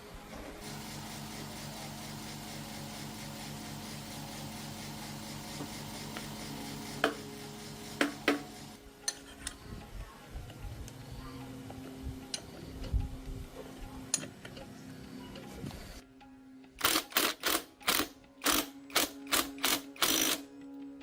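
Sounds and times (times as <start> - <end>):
workshop machine pulsing hum: 0.0 - 8.8.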